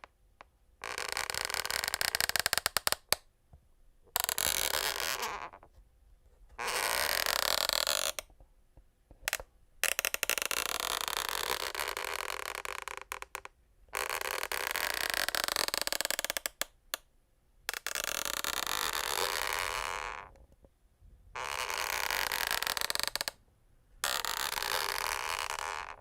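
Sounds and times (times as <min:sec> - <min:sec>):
floorboards creaking: 0:21.4 - 0:23.4, 0:24.0 - 0:26.0.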